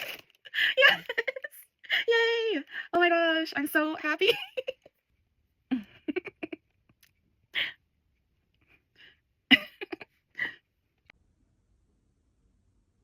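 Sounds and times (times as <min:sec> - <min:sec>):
woman laughing: 0:00.5 - 0:02.4, 0:04.2 - 0:04.9, 0:05.7 - 0:06.7, 0:09.5 - 0:10.6.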